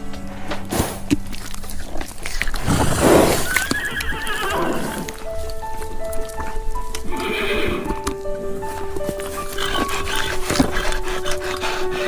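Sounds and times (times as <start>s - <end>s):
background music with held notes: 0.0s - 12.0s
horse whinnying: 2.6s - 5.3s, 7.0s - 8.2s.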